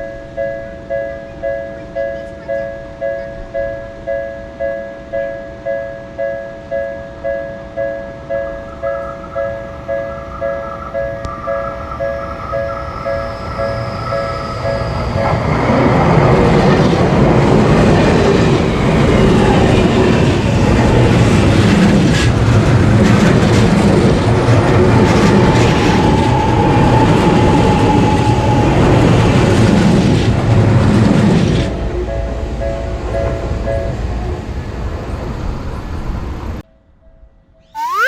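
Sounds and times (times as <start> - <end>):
steady train whine: 0.0 - 36.6
train wheels clattering on rails: 8.5 - 35.0.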